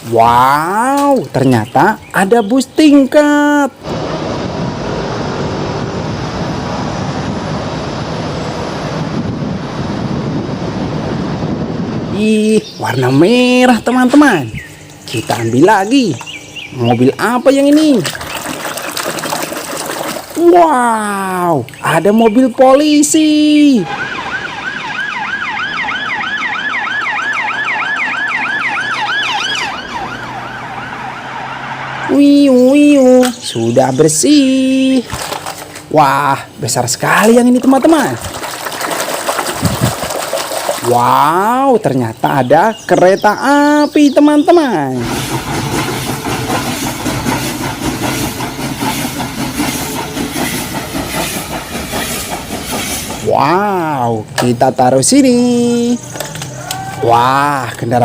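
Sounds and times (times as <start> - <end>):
police siren yelping: 23.7 - 32.8
train wheels clacking on rails: 45.0 - 53.5.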